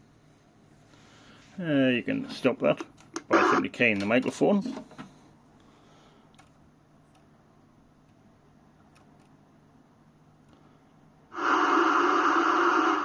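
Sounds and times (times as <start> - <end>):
radio static hiss: 3.3 - 3.7, 11.3 - 13.0.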